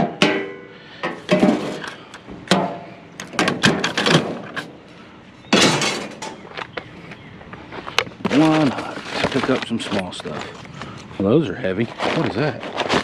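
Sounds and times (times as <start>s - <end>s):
metal scraps clanking together: 0.0s - 4.7s, 5.5s - 6.4s
metal scraping rattle: 0.2s - 4.8s, 5.5s - 6.4s.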